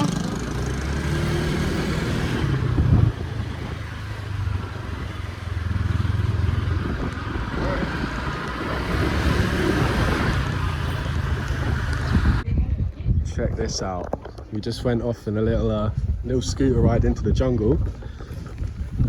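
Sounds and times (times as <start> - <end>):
motor scooter engine running: 0.0 - 12.5
wind noise on microphone: 0.0 - 19.0.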